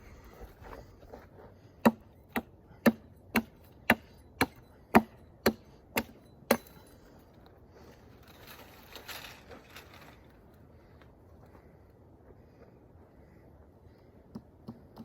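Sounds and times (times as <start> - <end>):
hand tool striking something hard: 1.8 - 7.0.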